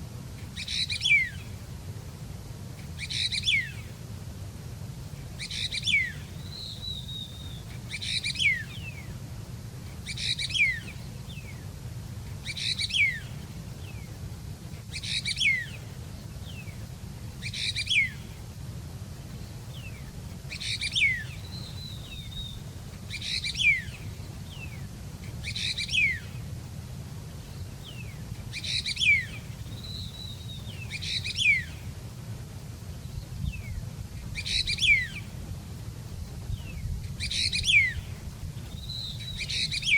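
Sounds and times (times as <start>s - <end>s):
songbird chirping: 0.0s - 39.9s
steady low hum: 0.0s - 39.9s.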